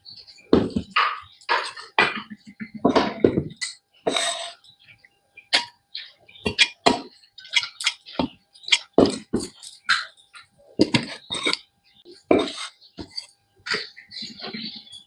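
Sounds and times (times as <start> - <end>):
kitchenware knocking and clinking: 0.5 - 4.4, 6.4 - 9.6, 10.8 - 11.6, 12.3 - 13.9.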